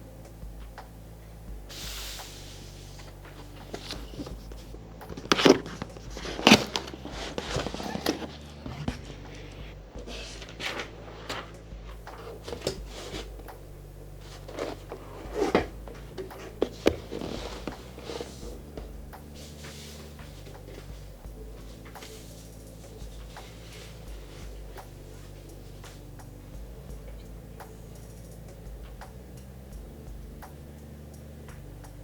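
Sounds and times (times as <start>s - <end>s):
packaging knocks and scrapes: 3.0s - 25.0s.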